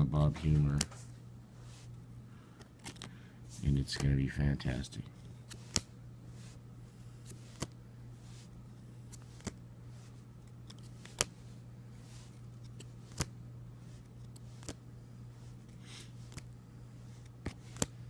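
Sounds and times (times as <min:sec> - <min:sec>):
low electrical hum: 0:00.0 - 0:18.0
trading cards clicking: 0:00.4 - 0:01.0, 0:02.6 - 0:04.2, 0:07.2 - 0:07.8, 0:09.1 - 0:09.6, 0:10.5 - 0:11.4, 0:12.6 - 0:13.4, 0:14.2 - 0:14.8, 0:16.2 - 0:16.5, 0:17.2 - 0:18.0.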